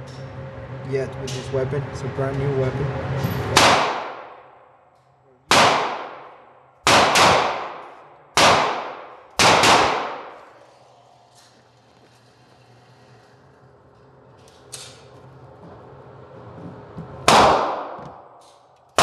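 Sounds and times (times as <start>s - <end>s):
pistol shots: 3.6s - 4.5s, 5.5s - 10.4s, 17.3s - 18.4s.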